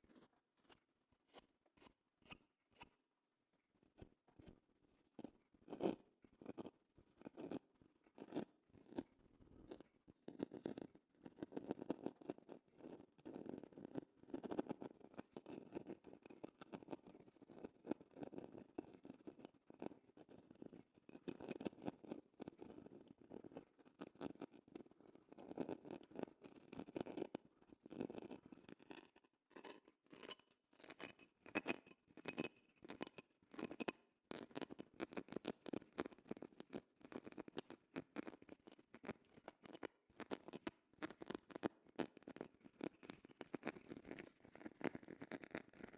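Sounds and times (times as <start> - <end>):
shell scratching and clicking: 28.1 - 45.9.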